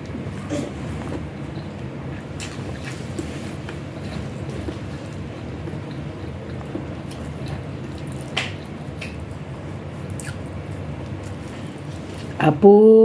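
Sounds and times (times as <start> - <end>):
steady low hum: 0.0 - 13.0
wet mouth clicks while chewing: 4.4 - 9.4, 10.1 - 10.5.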